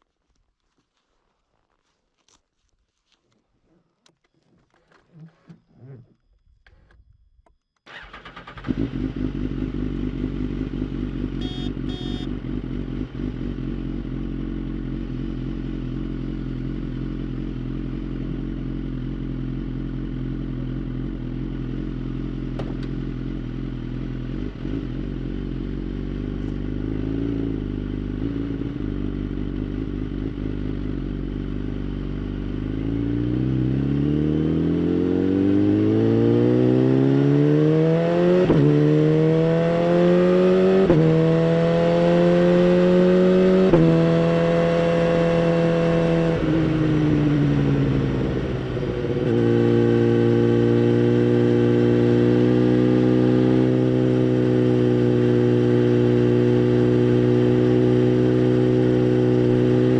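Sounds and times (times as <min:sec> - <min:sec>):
motorcycle engine starting and idling: 0:07.8 - 0:32.9
engine revving up: 0:11.4 - 0:12.3.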